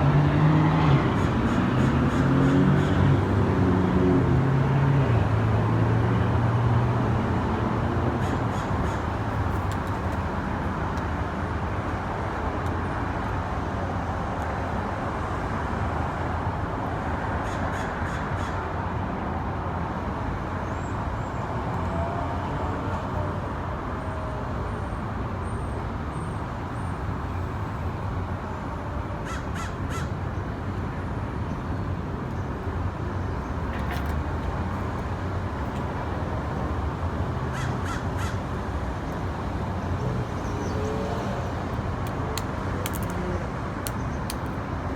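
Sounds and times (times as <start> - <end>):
crows cawing: 29.2 - 30.2, 37.5 - 38.5.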